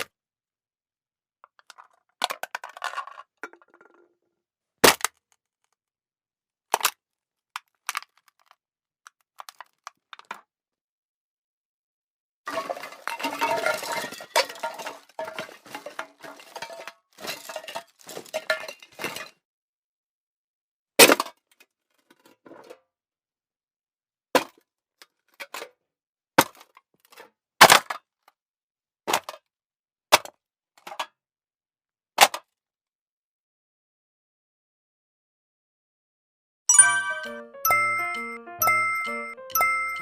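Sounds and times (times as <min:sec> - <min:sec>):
metal cans clinking and clattering: 0:01.6 - 0:04.0, 0:12.5 - 0:19.4.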